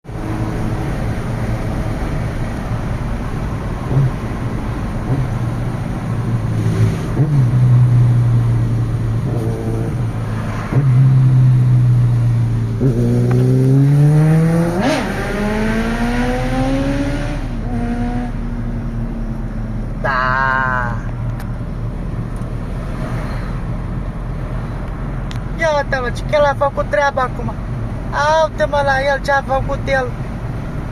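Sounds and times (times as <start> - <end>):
motorcycle engine accelerating: 6.5 - 18.7.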